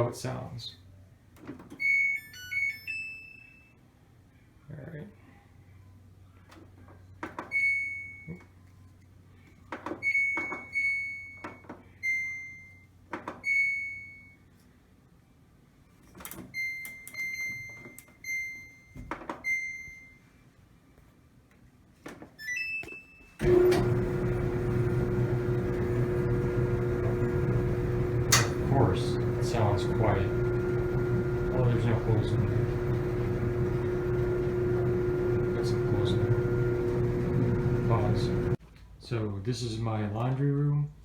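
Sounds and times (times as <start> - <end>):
dryer motor and drum humming: 23.4 - 38.6.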